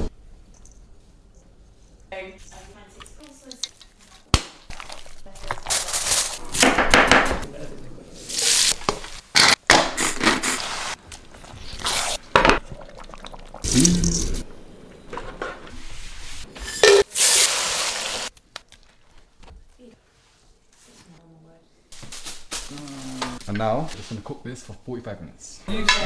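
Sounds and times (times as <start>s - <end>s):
food sizzling in a pot: 8.2s - 9.2s, 13.5s - 18.3s
utensils knocking on pans: 16.6s - 17.1s.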